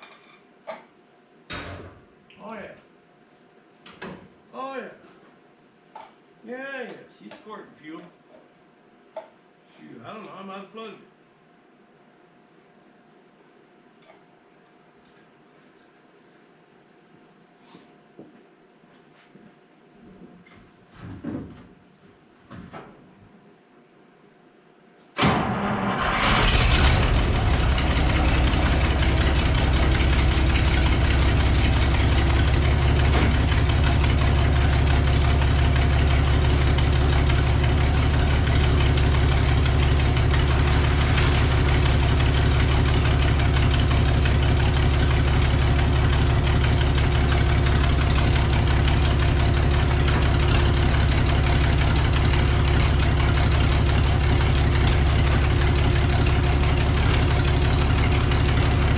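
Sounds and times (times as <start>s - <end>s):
tractor engine starting and running: 25.2s - 58.9s.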